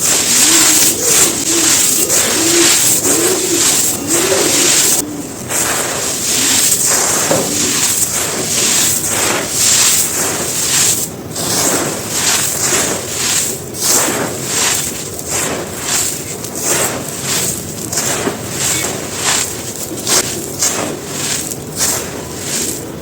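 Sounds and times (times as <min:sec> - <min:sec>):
cement chunks being crushed: 0:05.6 - 0:23.0.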